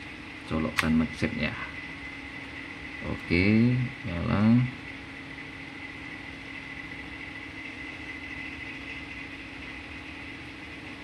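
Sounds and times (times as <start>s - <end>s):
machine hum with high whine: 0.0s - 11.0s.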